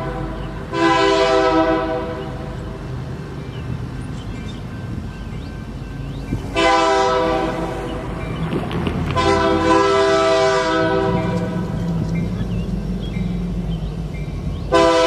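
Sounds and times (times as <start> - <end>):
locomotive air horn blasts: 0.0 - 2.6, 6.5 - 8.0, 9.1 - 11.8, 14.7 - 15.0
low train rumble: 0.0 - 15.0.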